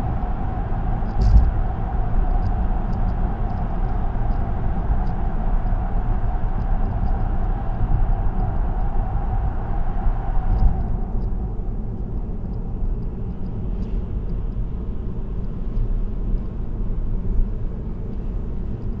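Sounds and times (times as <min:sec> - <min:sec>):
tyre and road noise in cabin: 0:00.0 - 0:19.0
faint light ticks: 0:10.5 - 0:14.7, 0:15.3 - 0:16.6, 0:18.1 - 0:19.0.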